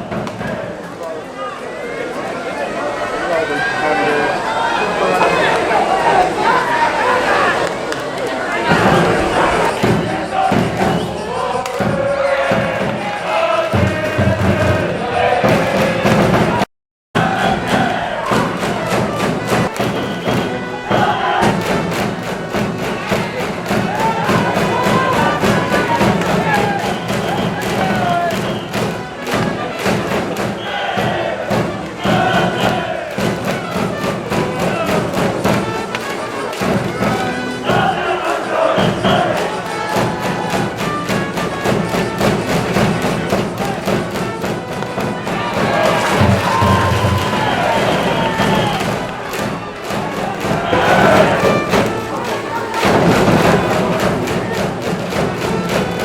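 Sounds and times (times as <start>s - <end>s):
brass: 2.0s - 16.6s, 17.2s - 56.0s
band playing a fight tune: 4.7s - 16.6s, 17.2s - 56.0s
fast drum beat: 17.2s - 29.1s, 38.8s - 56.0s.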